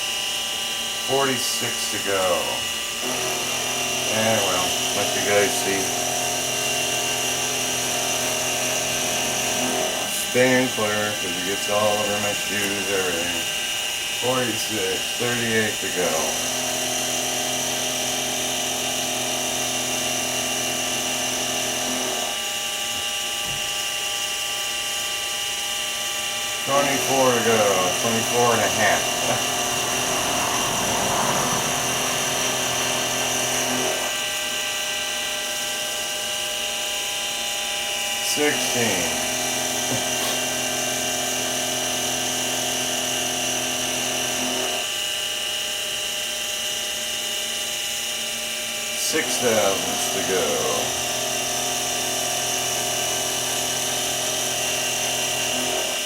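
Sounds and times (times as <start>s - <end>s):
milling spindle motor whine: 0.0s - 56.0s
low hum: 27.9s - 34.2s.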